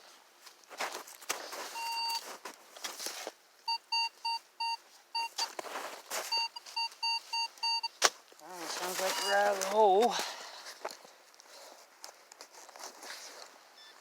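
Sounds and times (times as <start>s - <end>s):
metal detector pinpointer beeping: 3.7s - 5.5s, 6.3s - 8.0s, 9.0s - 9.8s
soil scraping: 8.4s - 10.8s.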